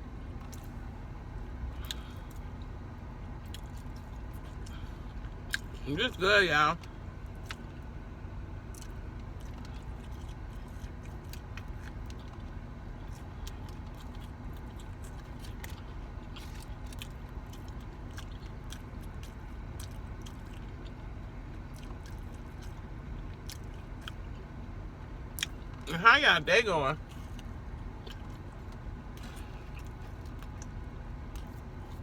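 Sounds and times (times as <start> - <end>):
steady low hum: 0.0 - 32.0
person chewing food: 0.2 - 5.8, 6.8 - 8.0, 8.6 - 25.8, 27.0 - 32.0
wet mouth clicks and crunches: 1.7 - 2.7, 3.4 - 5.8, 8.7 - 21.0, 27.1 - 30.7.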